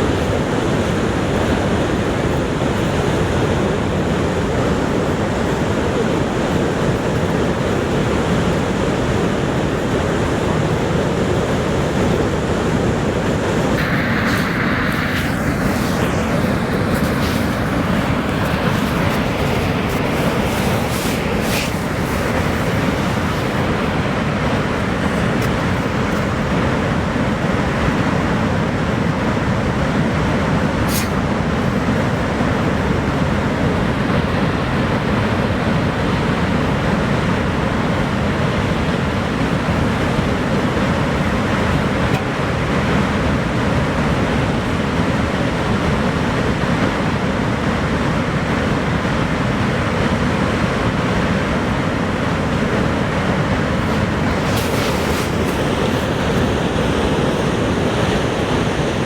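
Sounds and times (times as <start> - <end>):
waterfall rushing: 13.8 - 26.6, 53.6 - 57.3.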